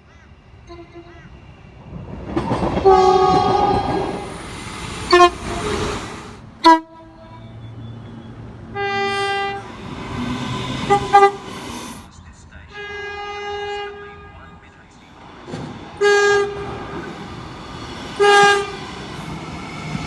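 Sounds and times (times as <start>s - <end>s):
moving train rumble: 0.0s - 20.0s
train air horn blasts: 2.8s - 4.4s, 5.1s - 12.0s, 12.7s - 14.5s, 16.0s - 17.1s, 18.1s - 19.3s.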